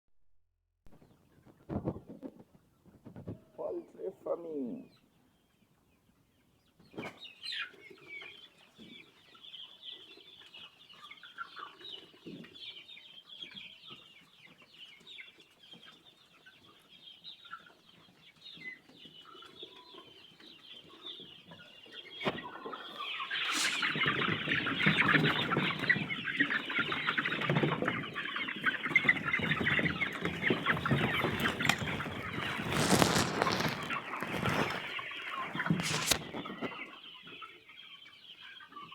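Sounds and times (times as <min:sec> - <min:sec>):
chickens clucking: 0:01.0 - 0:38.9.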